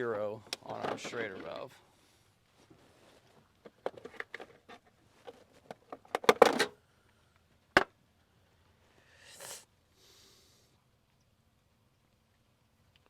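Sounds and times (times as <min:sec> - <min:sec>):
handling clicks and knocks: 0:00.4 - 0:01.6, 0:03.6 - 0:06.8.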